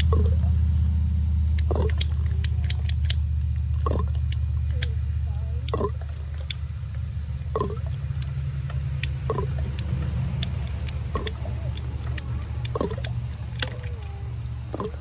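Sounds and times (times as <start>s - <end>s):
steady low hum: 0.0s - 15.0s
animal calling: 9.0s - 15.0s.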